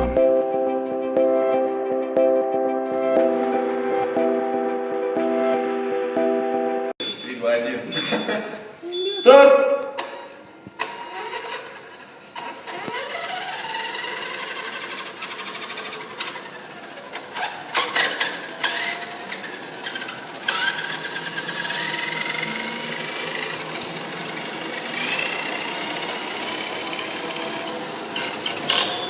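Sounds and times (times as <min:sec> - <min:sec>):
toy car motors whining: 0:10.8 - 0:29.0.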